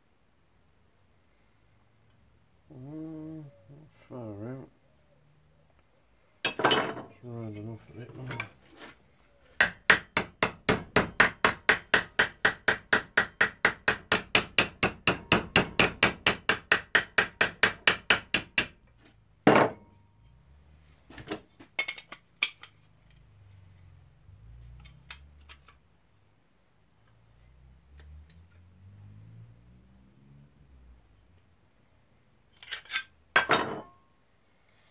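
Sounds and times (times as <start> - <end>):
hammer beating steel plate: 9.8 - 18.8.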